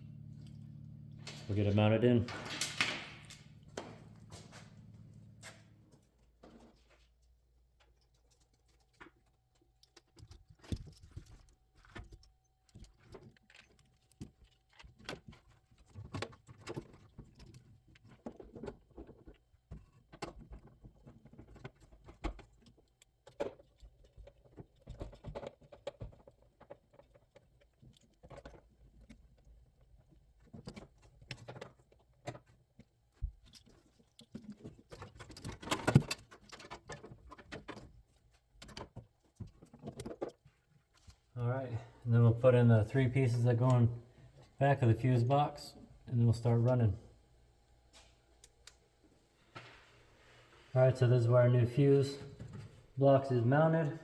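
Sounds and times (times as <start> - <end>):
parts and wiring rattling: 0.0 - 7.1, 33.2 - 42.1.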